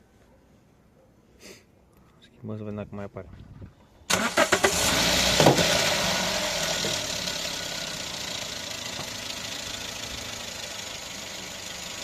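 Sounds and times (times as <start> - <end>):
car engine idling: 4.1 - 12.0.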